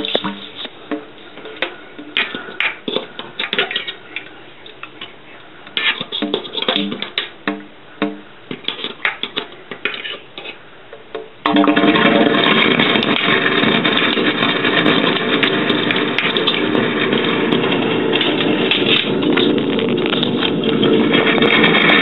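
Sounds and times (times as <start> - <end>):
metallic clanking and knocking: 11.5 - 22.0.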